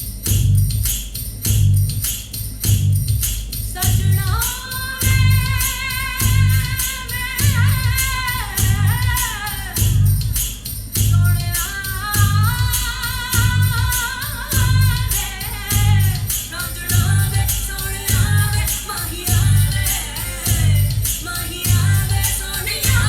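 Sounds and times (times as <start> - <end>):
deep bass beat: 0.0 - 23.0
quick tambourine-like percussion: 0.0 - 23.0
person singing: 11.5 - 23.0.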